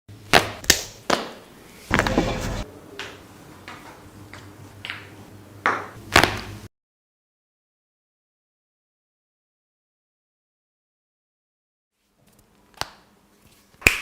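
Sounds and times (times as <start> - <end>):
rough rubbing noise: 1.9 - 2.7.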